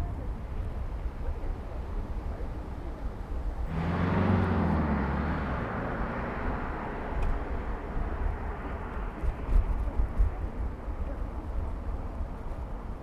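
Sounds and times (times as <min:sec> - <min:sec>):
vehicle passing by: 0:03.7 - 0:09.5.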